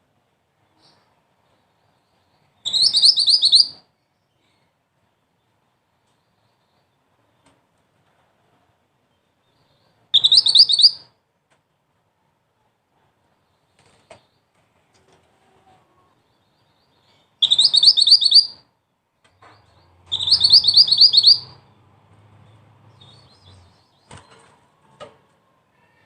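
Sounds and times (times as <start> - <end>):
bird calling high-pitched notes: 17.4 - 18.5, 20.1 - 21.6.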